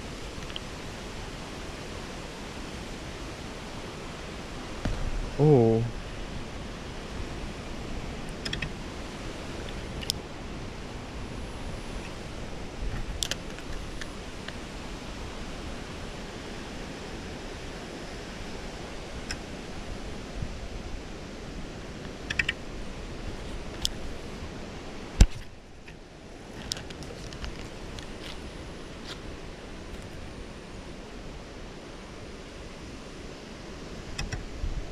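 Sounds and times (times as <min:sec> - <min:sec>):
steady outdoor rushing noise: 0:00.0 - 0:34.9
light clicks: 0:08.3 - 0:08.8, 0:09.6 - 0:10.2, 0:34.1 - 0:34.4.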